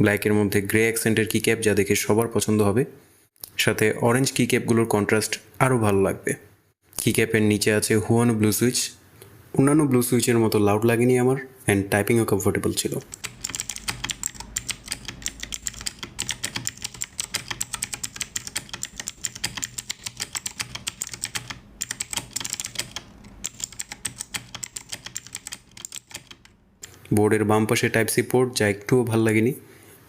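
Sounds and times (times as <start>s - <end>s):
mechanical keyboard typing: 13.0s - 27.1s.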